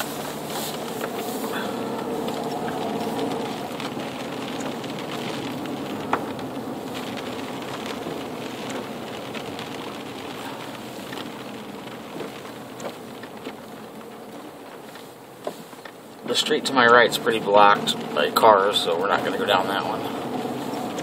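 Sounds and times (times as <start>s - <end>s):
tyres hissing on wet road: 0.0s - 21.0s.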